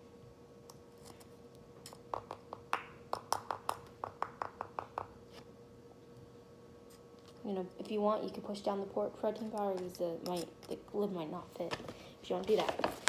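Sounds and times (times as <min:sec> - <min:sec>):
plastic scoop tapping a cup: 0:02.1 - 0:05.1.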